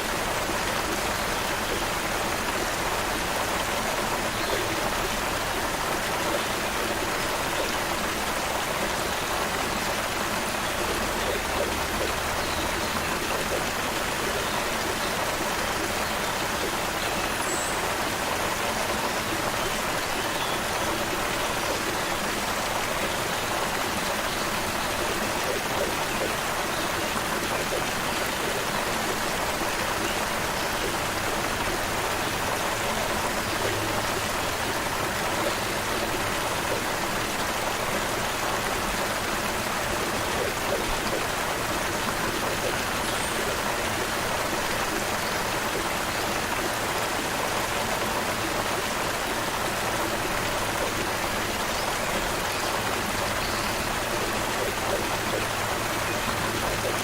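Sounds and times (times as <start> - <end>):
stream babbling over stones: 0.0 - 57.0.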